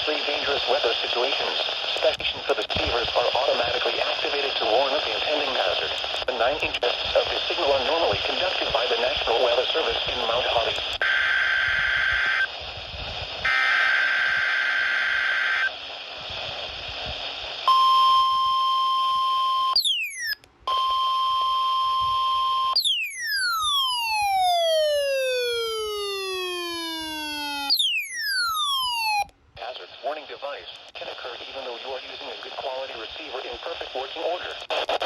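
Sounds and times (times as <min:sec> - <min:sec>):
long falling whistle: 0:17.7 - 0:29.3
steady warning alarm tone: 0:17.7 - 0:29.3
buzzy digital data screech: 0:25.8 - 0:29.3.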